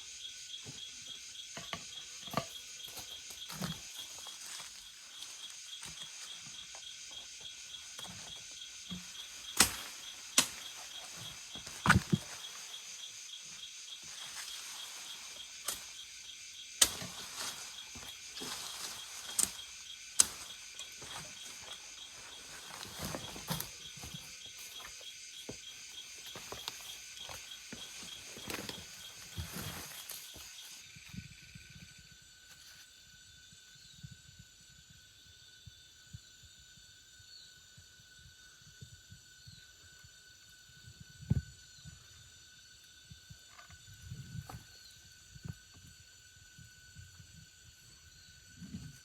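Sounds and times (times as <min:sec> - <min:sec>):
high insect chorus: 0:00.0 - 0:49.0.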